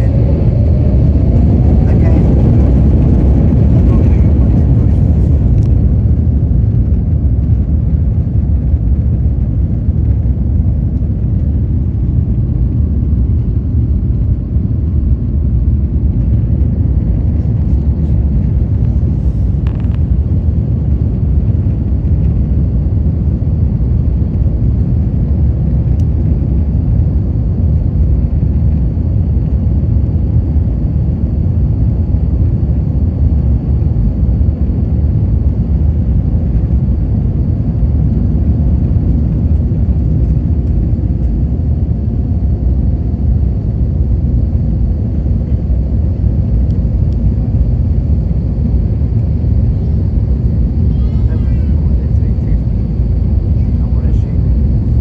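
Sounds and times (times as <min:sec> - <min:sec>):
jet engine cabin rumble: 0:00.0 - 0:55.0
faint high whine: 0:38.7 - 0:55.0.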